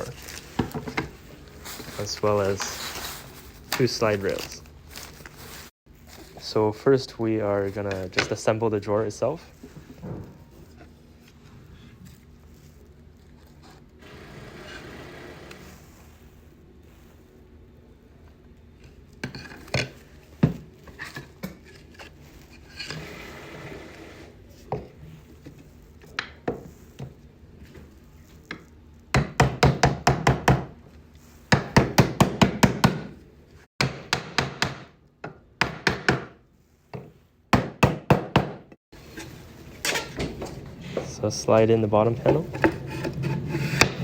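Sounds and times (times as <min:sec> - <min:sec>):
wood scraping: 0:13.3 - 0:15.9, 0:39.0 - 0:44.0.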